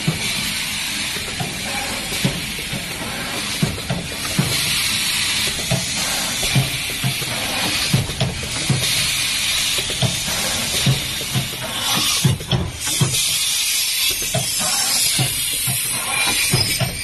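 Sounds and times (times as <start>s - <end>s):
air hiss: 8.6s - 17.0s.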